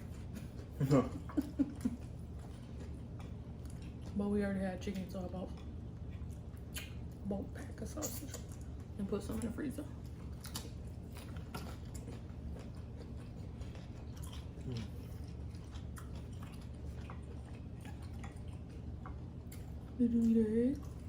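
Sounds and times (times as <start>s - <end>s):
people chewing food: 0.0s - 21.0s
steady low hum: 0.0s - 21.0s.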